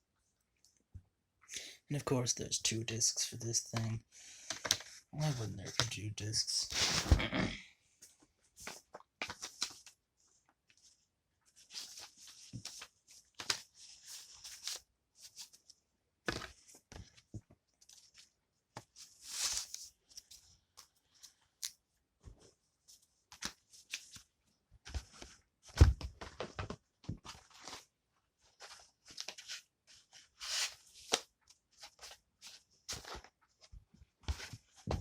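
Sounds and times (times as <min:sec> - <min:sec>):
paper and cardboard rustling: 0:10.8 - 0:15.7, 0:16.3 - 0:20.4, 0:22.2 - 0:35.0.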